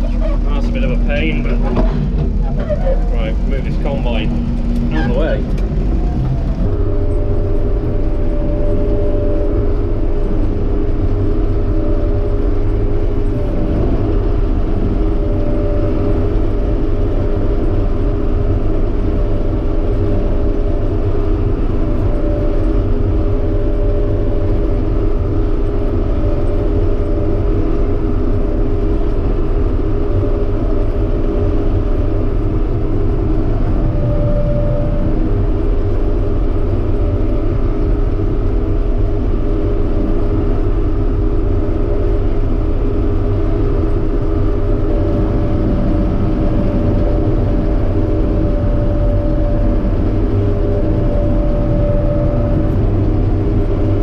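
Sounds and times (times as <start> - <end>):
combine harvester engine drone: 0.0 - 54.0
high machinery whine: 0.0 - 54.0.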